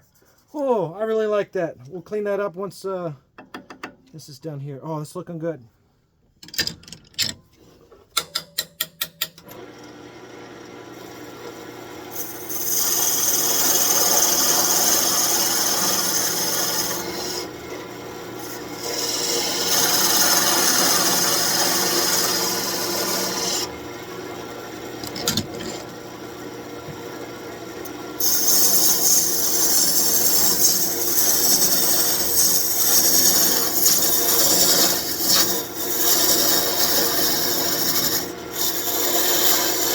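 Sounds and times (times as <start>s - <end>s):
wood lathe humming: 9.6s - 39.9s
turning tool scraping wood: 12.1s - 17.5s, 18.4s - 23.7s, 28.2s - 39.9s.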